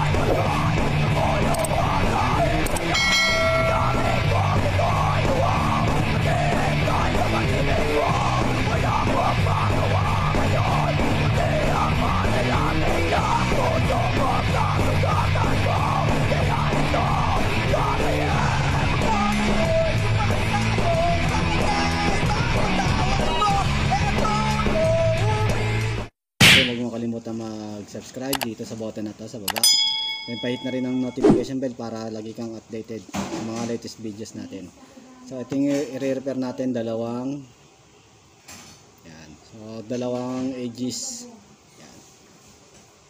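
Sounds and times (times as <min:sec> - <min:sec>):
rock music with shouted vocals: 0:00.0 - 0:26.0.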